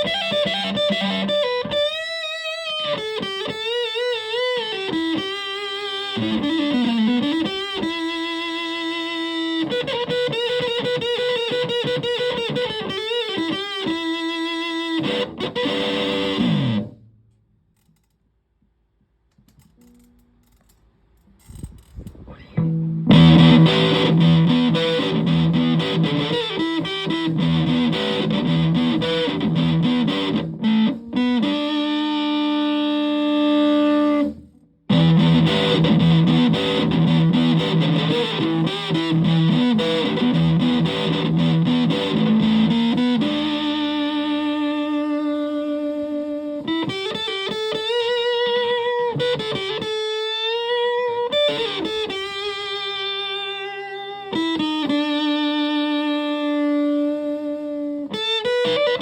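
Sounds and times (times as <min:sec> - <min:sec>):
fuzz electric guitar riffs: 0:00.0 - 0:17.1, 0:22.3 - 0:59.0.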